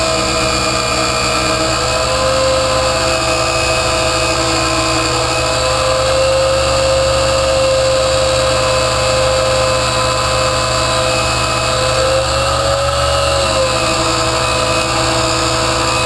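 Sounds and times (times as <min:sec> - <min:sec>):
chop saw grinding steel: 0:00.0 - 0:16.0.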